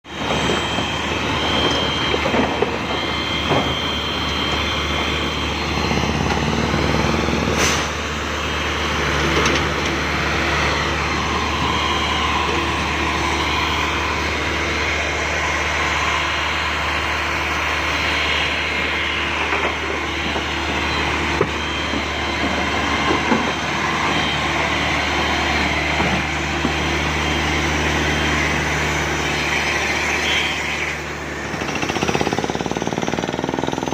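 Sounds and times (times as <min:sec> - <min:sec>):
engine drone: 0:00.0 - 0:33.9
mechanical drilling noise: 0:08.4 - 0:33.9.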